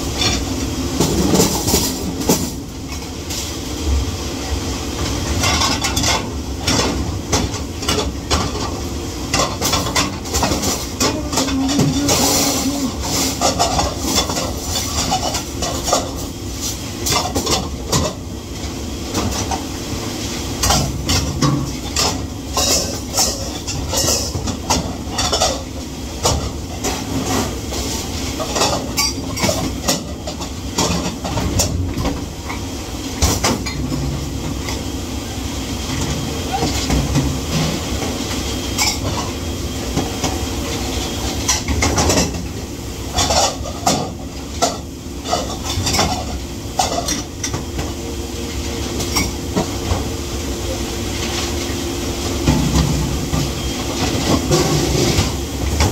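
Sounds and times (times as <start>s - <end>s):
dishes and cutlery clattering: 9.3s - 16.2s, 20.6s - 27.4s, 28.4s - 31.8s, 43.1s - 47.6s.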